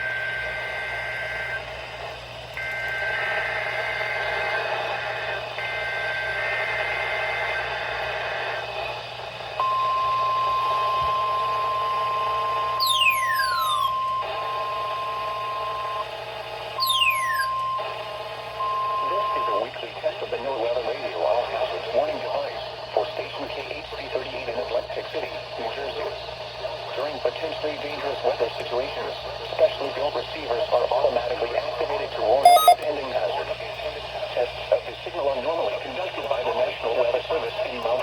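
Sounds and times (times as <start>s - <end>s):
long steady alert tone: 12.8s - 14.0s, 16.8s - 17.8s, 32.4s - 32.8s
warbling two-tone digital data bursts: 16.8s - 17.6s, 32.4s - 32.8s.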